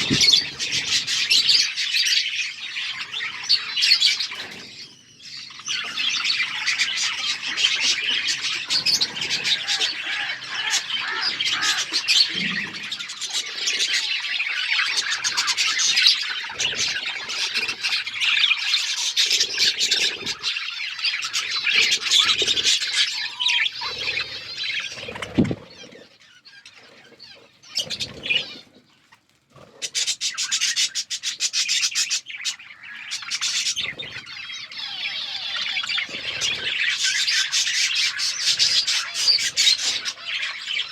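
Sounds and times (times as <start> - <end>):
flock of budgerigars chattering: 0.0 - 40.9.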